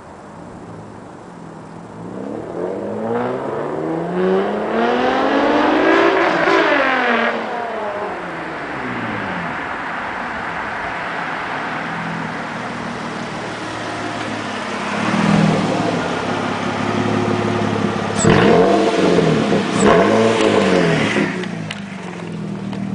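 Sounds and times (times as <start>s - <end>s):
car exhaust driving by: 0.0s - 22.9s
engine revving: 2.0s - 9.8s, 12.6s - 22.9s.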